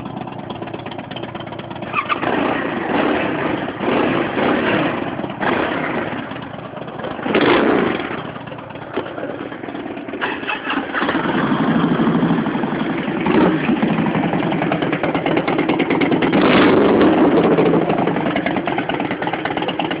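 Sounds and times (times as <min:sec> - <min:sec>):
motorcycle engines revving: 0:01.8 - 0:20.0
motorcycle starter cranking: 0:10.0 - 0:12.2.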